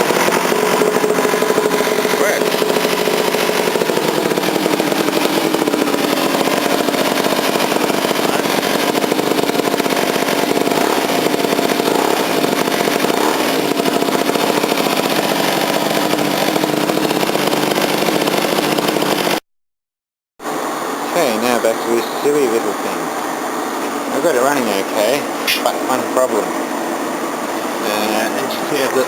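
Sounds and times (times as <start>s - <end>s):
small motorbike engine running: 0.0s - 19.4s, 21.1s - 23.1s, 24.0s - 29.0s.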